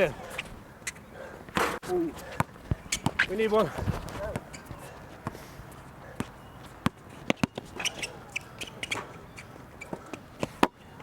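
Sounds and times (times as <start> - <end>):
sneaker squeaks: 0.3 - 5.4, 6.0 - 10.9.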